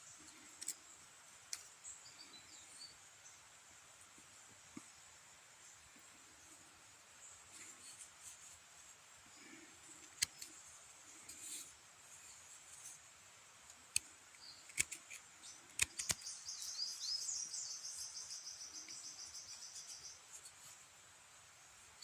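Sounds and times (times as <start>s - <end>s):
sharp clicks: 13.6s - 16.4s
songbird trilling: 15.4s - 20.2s.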